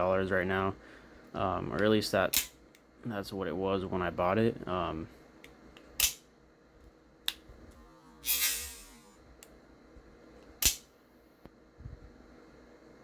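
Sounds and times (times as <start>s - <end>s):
knife blade firing with a snap: 10.6s - 10.9s.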